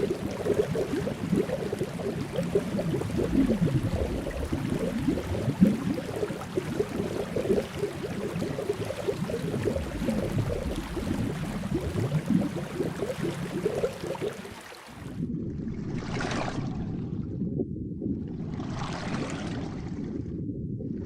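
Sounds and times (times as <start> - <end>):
underwater bubbling and gurgling: 0.0 - 21.0
low steady rumble: 15.2 - 21.0.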